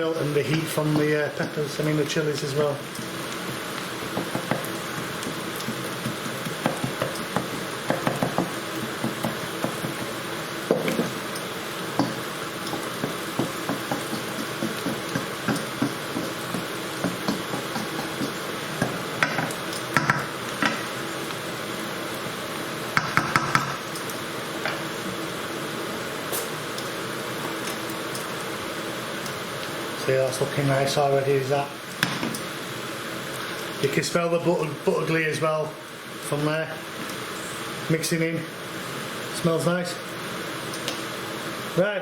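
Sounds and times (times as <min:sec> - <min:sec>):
onions sizzling in a pan: 0:00.2 - 0:30.0, 0:31.6 - 0:33.9, 0:35.8 - 0:37.9
utensil scraping a pan: 0:12.0 - 0:20.9.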